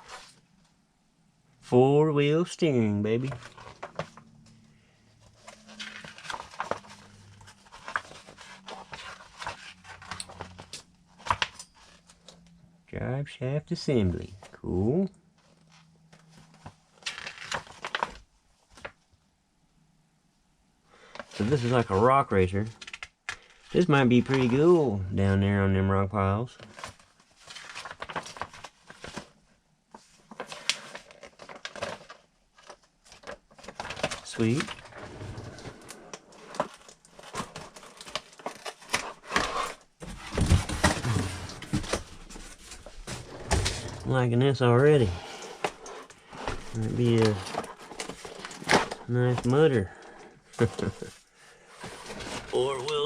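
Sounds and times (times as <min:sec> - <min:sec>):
clicks and rustles of handling: 0:22.6 - 0:24.8, 0:26.6 - 0:44.1, 0:44.9 - 0:53.0
plastic packaging crinkling: 0:30.2 - 0:39.9, 0:46.6 - 0:49.6.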